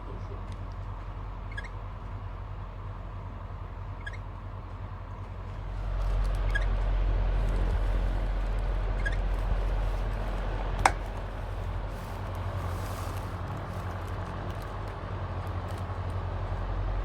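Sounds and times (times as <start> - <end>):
stand fan humming: 0.0 - 17.0
fan knob click: 10.8 - 11.2.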